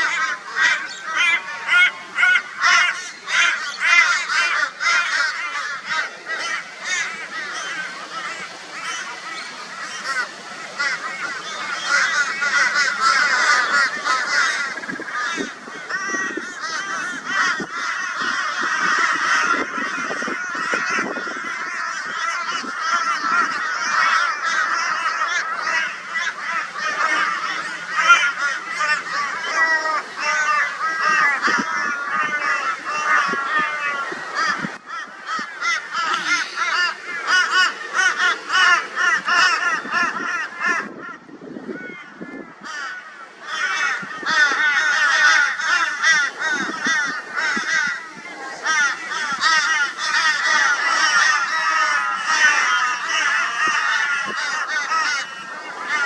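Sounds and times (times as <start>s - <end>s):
crows cawing: 0.0s - 56.0s.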